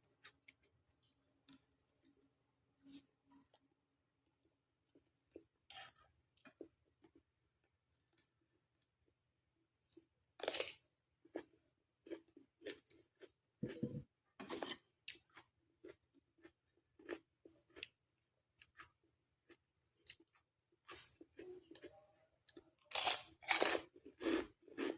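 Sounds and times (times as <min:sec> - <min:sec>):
soft chewing: 0:00.0 - 0:09.2, 0:09.8 - 0:24.9.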